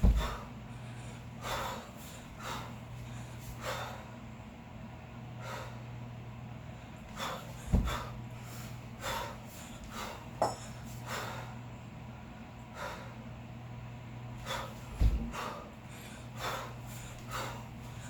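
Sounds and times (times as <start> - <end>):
dull thump: 0.0 - 0.4, 7.7 - 8.0, 14.9 - 15.4
hard rhythmic breathing: 0.0 - 4.3, 5.4 - 6.0, 6.7 - 11.7, 12.6 - 13.3, 14.3 - 18.0.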